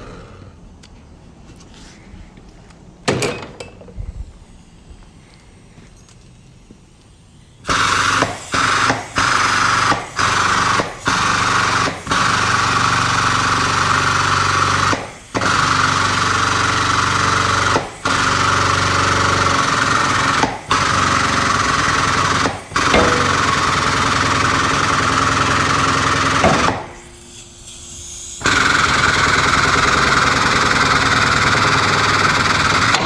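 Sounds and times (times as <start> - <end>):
hydraulic pump running: 7.6 - 33.0.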